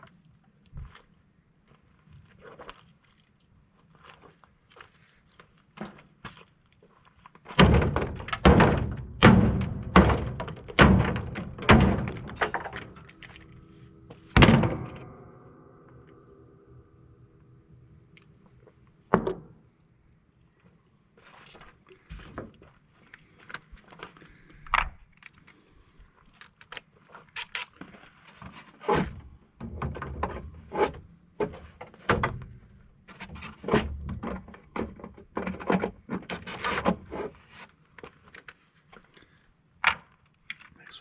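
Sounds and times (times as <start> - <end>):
metal knocks and clanks: 7.6 - 17.4.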